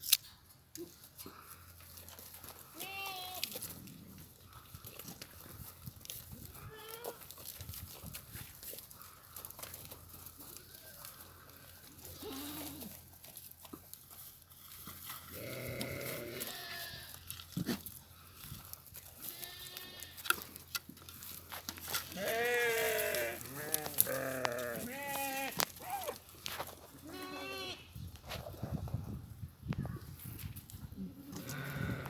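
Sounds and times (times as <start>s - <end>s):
goats bleating: 2.6s - 3.6s, 12.0s - 13.0s, 15.3s - 17.2s, 19.2s - 20.2s, 22.0s - 26.2s, 27.0s - 27.9s, 31.3s - 32.0s.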